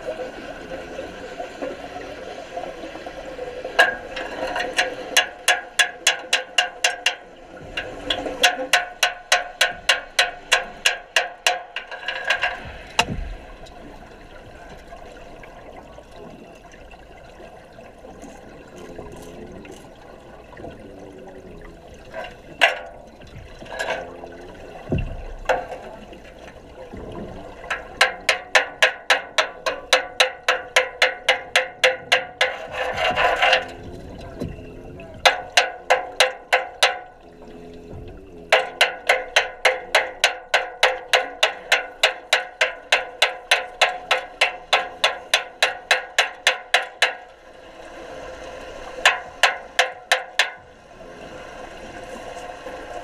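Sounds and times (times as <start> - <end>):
underwater watery background: 0.0 - 53.0
sharp underwater clicks: 3.8 - 13.8, 27.7 - 47.4.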